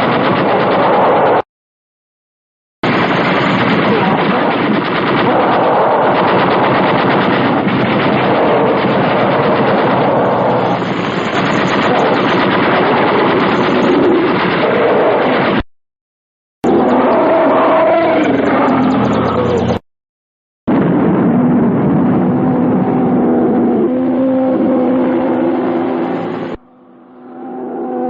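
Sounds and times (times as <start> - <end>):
rapid machine-gun fire: 0.0 - 1.4, 2.8 - 15.6.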